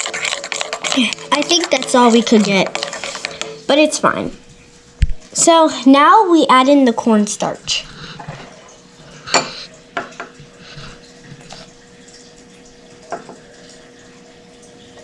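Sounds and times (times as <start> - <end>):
faint steady hum: 0.0 - 15.0
spoon clinking against a bowl: 9.3 - 9.6.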